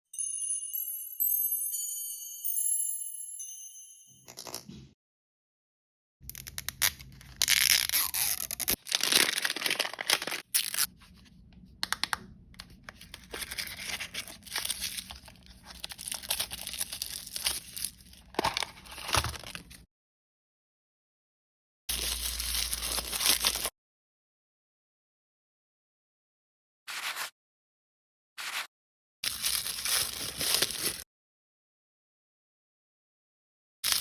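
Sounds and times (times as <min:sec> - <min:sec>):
packaging tearing and crinkling: 0:06.3 - 0:10.9, 0:13.0 - 0:19.8, 0:21.9 - 0:23.7, 0:29.3 - 0:31.0.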